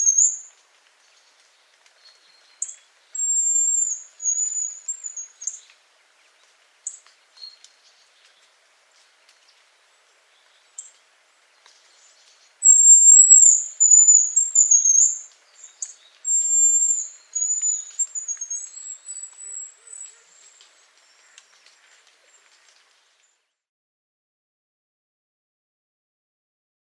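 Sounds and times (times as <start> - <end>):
bird high thin whistling: 0.0 - 0.5, 2.6 - 5.6, 12.6 - 20.6.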